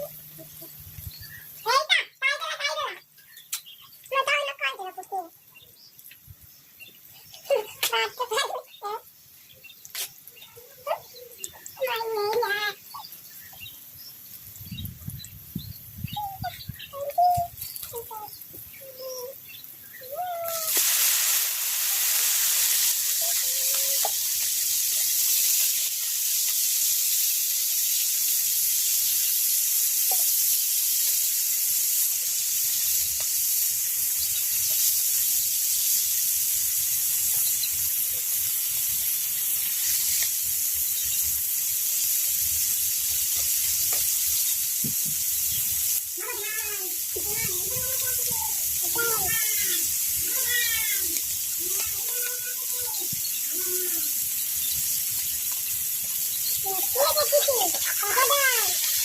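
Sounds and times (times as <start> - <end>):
birds chirping faintly: 0.0 - 20.6, 51.6 - 58.8
frying in hot oil: 0.0 - 59.0.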